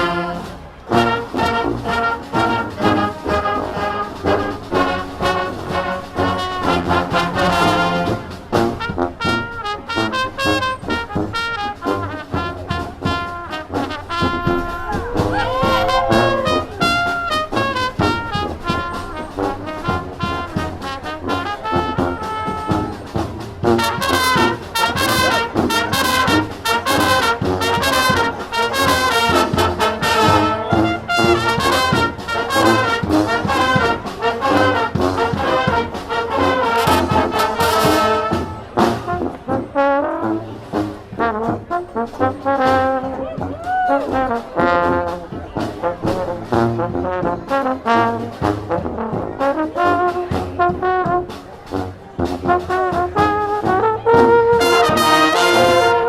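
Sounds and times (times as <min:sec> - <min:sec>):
marching band playing: 0:00.0 - 0:56.0
trumpets and trombones: 0:00.0 - 0:56.0
steady drum beat: 0:01.0 - 0:39.3, 0:52.2 - 0:56.0.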